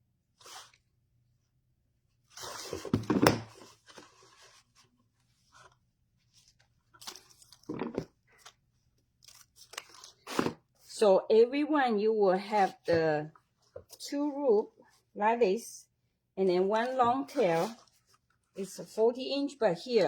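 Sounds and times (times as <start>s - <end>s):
ribbon rustling and crinkling: 3.7s - 10.9s, 16.7s - 18.7s.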